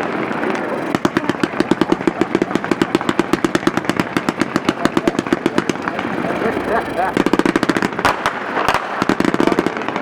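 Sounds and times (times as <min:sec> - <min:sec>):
firework cake firing: 0:00.0 - 0:10.0.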